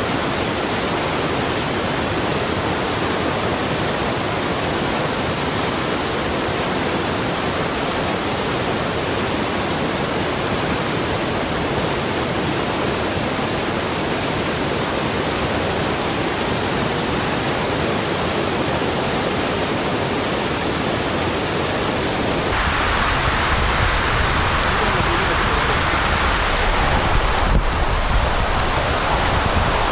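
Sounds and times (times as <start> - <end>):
heavy rain pouring: 0.0 - 29.9.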